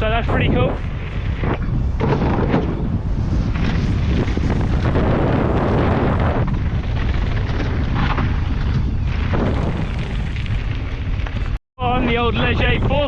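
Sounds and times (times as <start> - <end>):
wind buffeting microphone: 0.0 - 13.0
mountain bike knocks and rattle: 1.5 - 2.9, 6.5 - 11.4.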